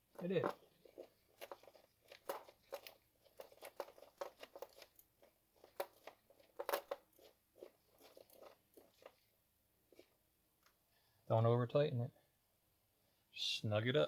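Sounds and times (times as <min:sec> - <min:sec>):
hand tools clicking and rattling: 0:00.0 - 0:09.2.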